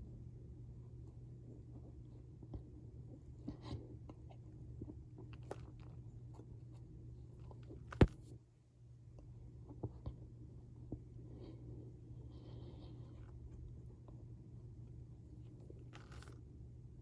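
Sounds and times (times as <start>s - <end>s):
steady low hum: 0.0s - 17.0s
cornstarch powder crunching: 15.9s - 16.4s.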